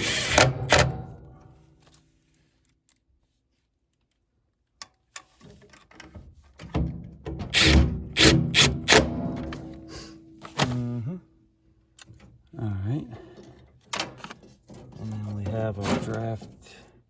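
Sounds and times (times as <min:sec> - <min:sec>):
knocks and clunks of furnace parts: 0:00.0 - 0:01.6, 0:06.6 - 0:10.7.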